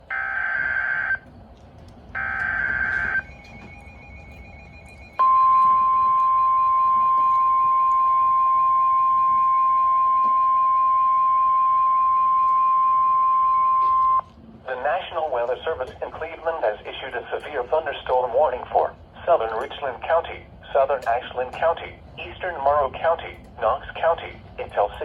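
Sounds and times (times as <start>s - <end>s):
steady warning alert tone: 2.2s - 14.2s.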